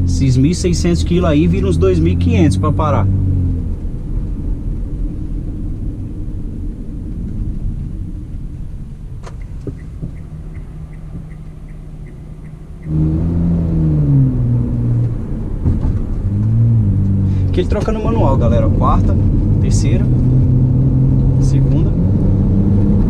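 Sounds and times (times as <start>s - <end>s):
low car exhaust rumble: 0.0s - 23.0s
turn signal ticking: 7.0s - 13.5s.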